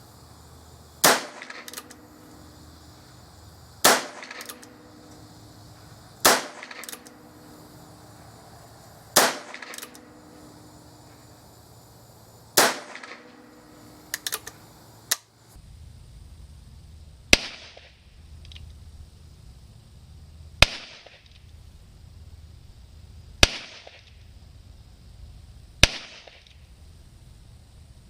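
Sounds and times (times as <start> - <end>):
rifle shots with echo: 1.0 - 2.2, 3.8 - 5.2, 6.2 - 7.3, 9.2 - 10.3, 12.6 - 13.7.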